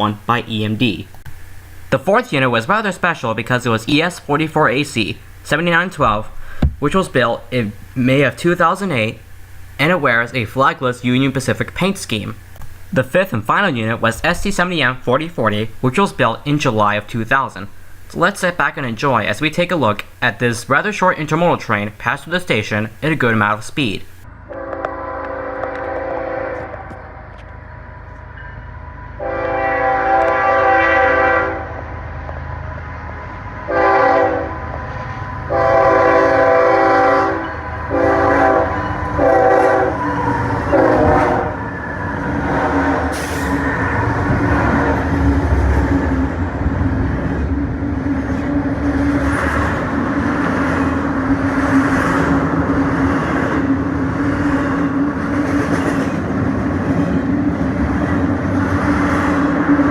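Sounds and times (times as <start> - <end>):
freight train rumbling past: 0.0 - 59.9
train air horn blasts: 24.5 - 27.4, 29.1 - 32.1, 33.7 - 41.8, 42.4 - 44.3.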